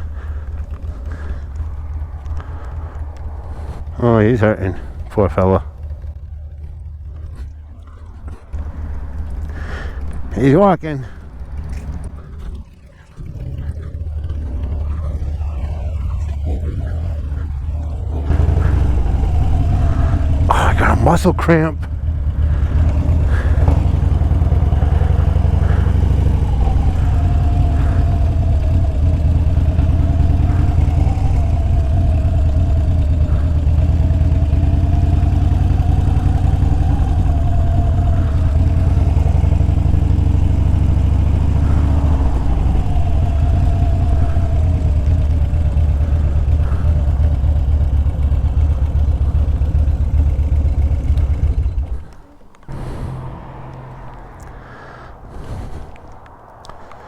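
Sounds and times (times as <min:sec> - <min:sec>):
motorcycle engine rumbling: 0:00.0 - 0:57.0
faint wavering whine: 0:23.3 - 0:57.0.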